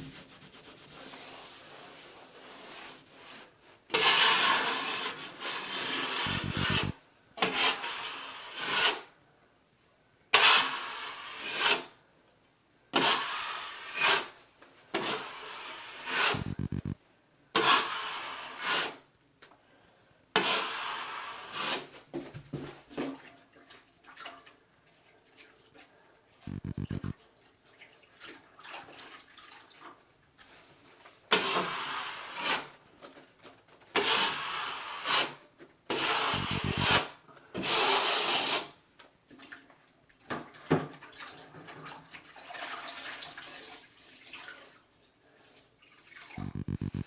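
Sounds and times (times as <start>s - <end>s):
drywall knife scraping wall: 0.0s - 9.1s, 10.3s - 11.9s, 12.9s - 16.5s, 20.4s - 21.9s, 31.3s - 32.8s, 33.9s - 38.8s.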